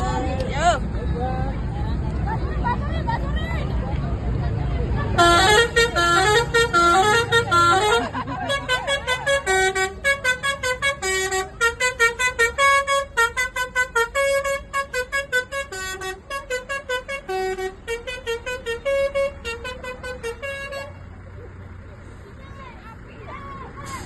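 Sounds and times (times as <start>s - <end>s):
multi-tone bus horn blasts: 5.1s - 21.1s.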